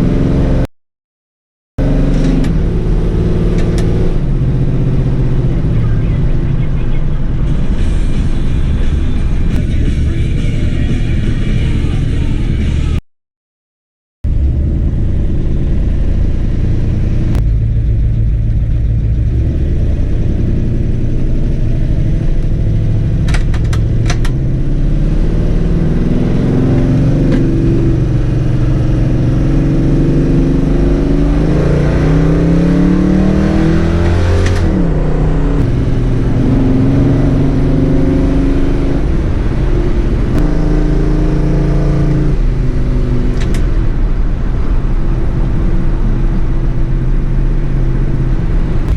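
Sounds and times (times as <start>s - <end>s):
car engine accelerating through gears: 0.0s - 0.7s, 1.8s - 10.0s, 14.3s - 48.9s.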